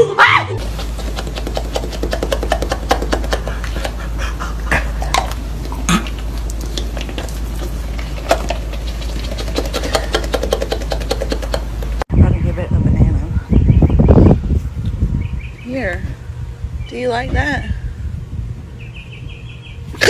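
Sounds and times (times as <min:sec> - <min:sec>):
steady low hum: 0:00.0 - 0:20.0
dog making small sounds: 0:00.2 - 0:11.8.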